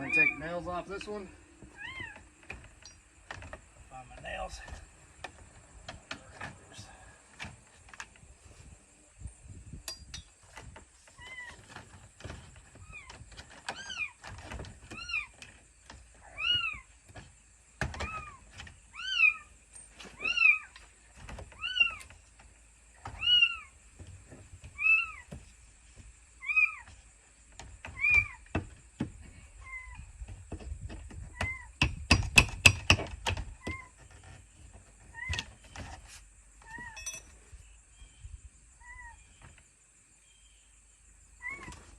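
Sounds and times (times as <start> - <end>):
nails knocking in vinyl siding: 27.6 - 29.3, 30.2 - 34.2.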